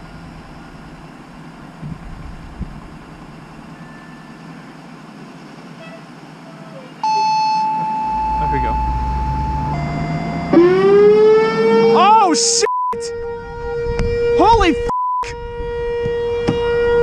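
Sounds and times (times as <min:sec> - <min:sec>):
road traffic: 0:00.0 - 0:17.0
warning siren steady tone: 0:07.0 - 0:17.0.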